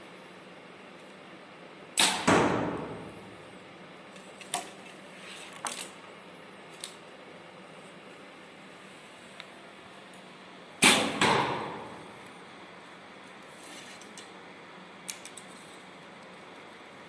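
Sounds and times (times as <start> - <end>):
sharp crack: 2.0 - 3.1, 10.8 - 12.0.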